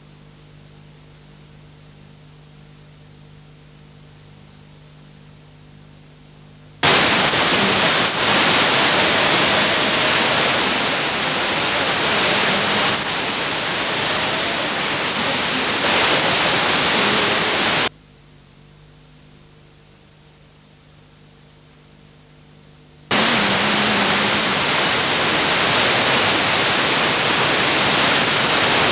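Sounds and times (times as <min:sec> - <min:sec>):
loud static hiss: 0:06.7 - 0:18.6, 0:19.8 - 0:28.9.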